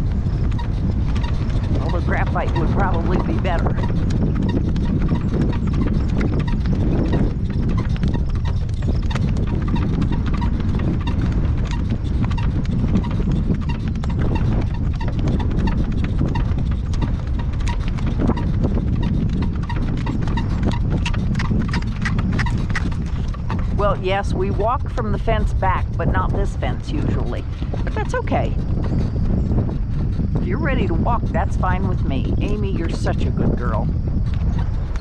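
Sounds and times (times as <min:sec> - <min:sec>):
horse hooves clip-clopping: 0:00.0 - 0:35.0
steady low rumble: 0:00.0 - 0:35.0.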